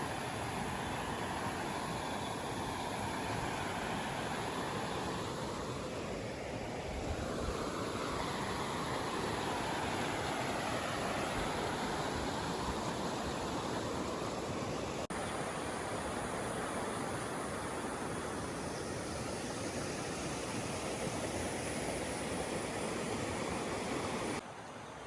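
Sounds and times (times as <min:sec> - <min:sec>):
water rushing: 0:00.0 - 0:18.5.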